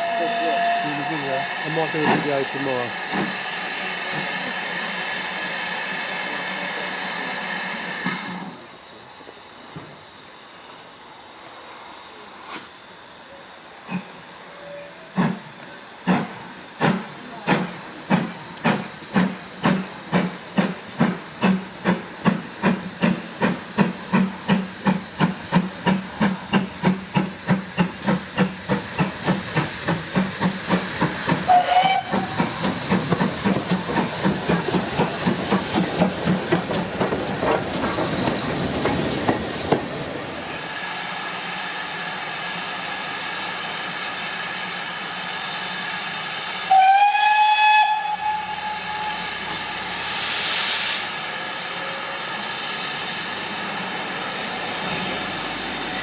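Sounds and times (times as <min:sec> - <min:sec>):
steam whistle: 0:00.0 - 0:01.8, 0:31.5 - 0:32.4, 0:46.6 - 0:51.0
steam hissing: 0:00.0 - 0:56.0
steam locomotive exhaust beats: 0:00.0 - 0:56.0.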